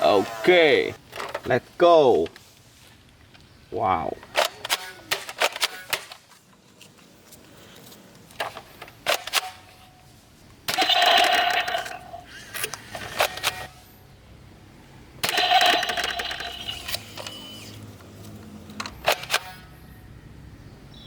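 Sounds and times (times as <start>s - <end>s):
toy gun buzzing burst: 10.7s - 13.7s, 15.2s - 17.5s
toy gun clicks and rattles: 10.7s - 13.7s, 15.2s - 17.4s, 18.8s - 19.6s.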